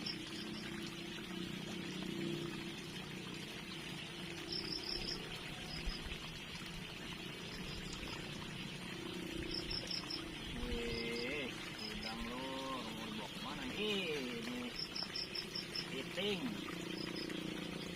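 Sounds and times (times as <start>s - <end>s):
insects chirping: 0.0s - 6.1s, 7.2s - 17.9s
water trickling in a stream: 0.0s - 17.9s.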